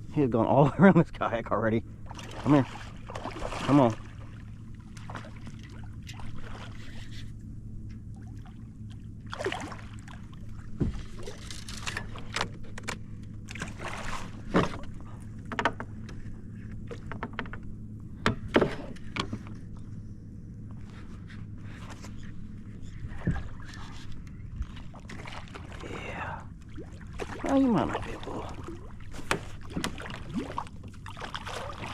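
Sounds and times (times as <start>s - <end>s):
steady low hum: 0.0s - 31.9s
splashes against kayak hull: 2.1s - 4.3s, 26.8s - 31.9s.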